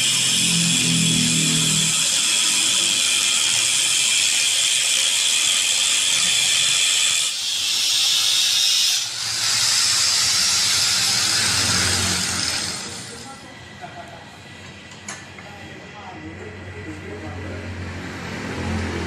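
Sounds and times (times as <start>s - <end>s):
steel machining screech: 0.0s - 13.3s.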